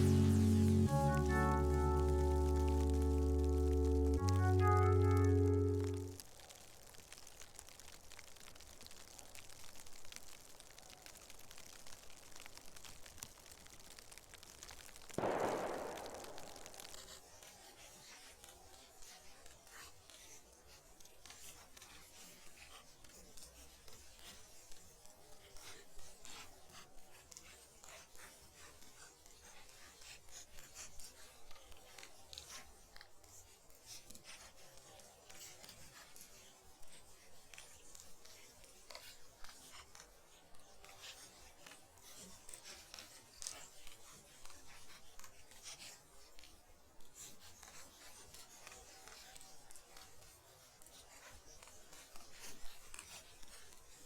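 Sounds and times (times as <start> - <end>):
soft hiss of light wind: 0.0 - 17.6
small ticks and crackles: 0.0 - 54.0.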